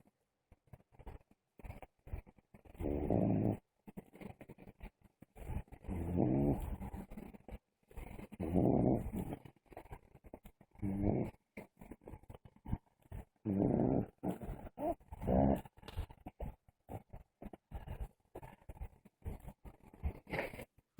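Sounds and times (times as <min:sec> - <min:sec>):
person snoring: 0:02.8 - 0:03.6, 0:05.9 - 0:06.7, 0:08.4 - 0:09.2, 0:10.8 - 0:11.3, 0:13.5 - 0:15.6.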